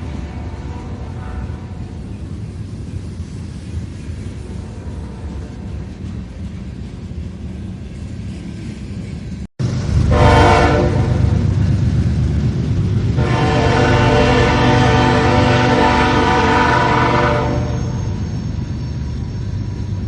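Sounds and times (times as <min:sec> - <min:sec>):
train running: 0:00.0 - 0:20.0
train horn blasts: 0:00.3 - 0:01.8, 0:10.1 - 0:11.4, 0:13.2 - 0:18.2.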